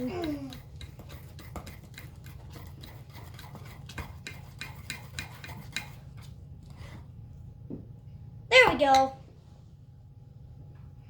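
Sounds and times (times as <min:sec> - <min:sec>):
spoon scraping a bowl: 0:00.0 - 0:07.0.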